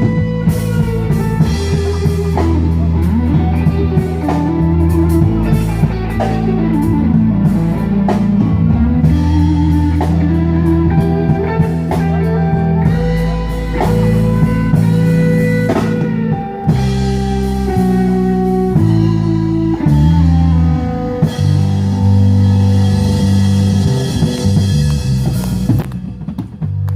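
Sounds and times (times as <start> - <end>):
bass guitar: 0.0 - 26.9
drum kit: 0.0 - 26.9
electric guitar lead: 0.0 - 26.9.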